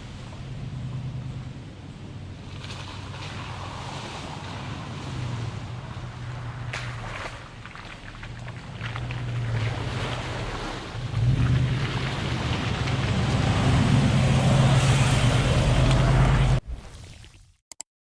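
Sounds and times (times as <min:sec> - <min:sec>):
car engine drone: 0:00.0 - 0:16.6.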